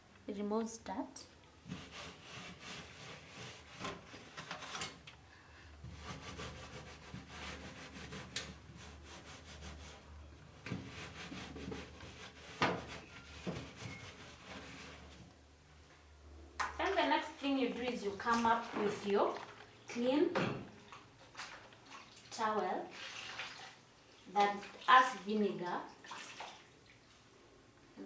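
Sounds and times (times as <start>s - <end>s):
scrubbing pad scrubbing oven: 1.6s - 4.5s, 5.9s - 15.2s.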